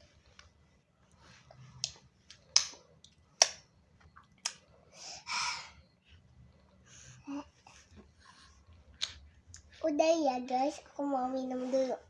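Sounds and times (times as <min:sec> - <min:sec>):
sharp mouth clicks: 0:04.2 - 0:04.6.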